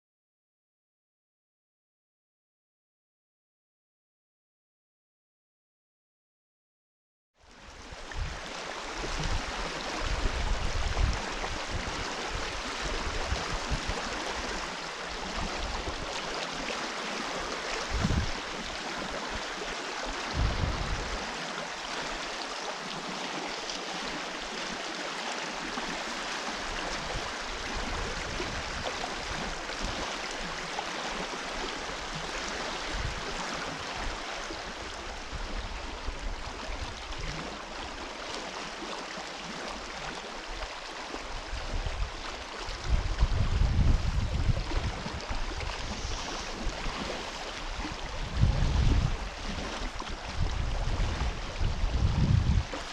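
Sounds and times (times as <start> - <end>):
river water rushing: 7.5 - 52.9
low thumps and rumbles: 20.3 - 21.1.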